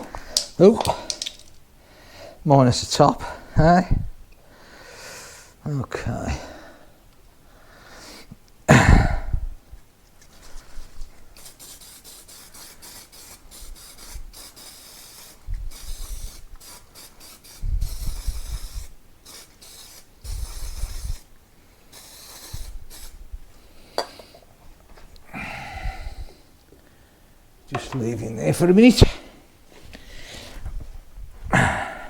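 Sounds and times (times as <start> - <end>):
aerosol can spraying: 10.8 - 21.3, 21.9 - 23.2.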